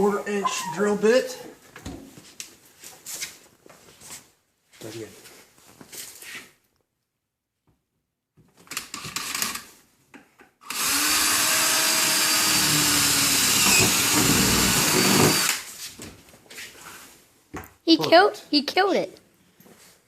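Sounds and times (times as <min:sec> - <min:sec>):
power drill boring metal: 0:10.6 - 0:15.6.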